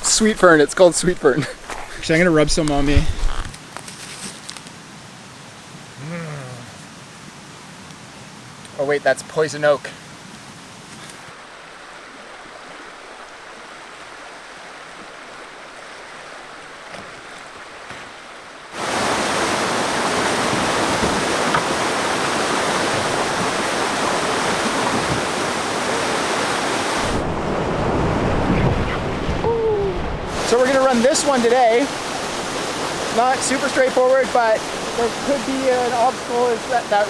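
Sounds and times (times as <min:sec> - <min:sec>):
river rapids rushing: 0:18.7 - 0:27.2, 0:30.3 - 0:37.0.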